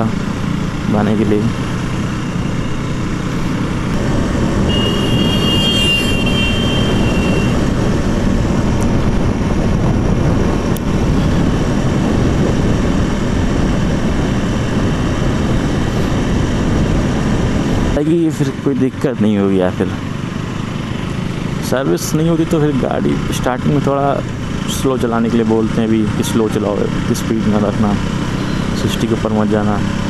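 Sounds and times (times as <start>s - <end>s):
motorcycle engine cruising: 0.0s - 30.0s
wind rush and road noise: 0.0s - 30.0s.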